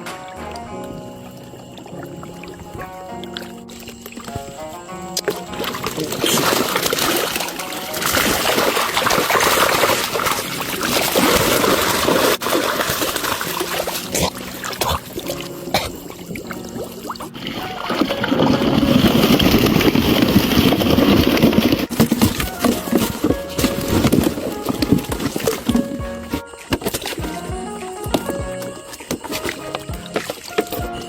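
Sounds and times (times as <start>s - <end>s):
water trickling and sloshing: 0.0s - 31.0s.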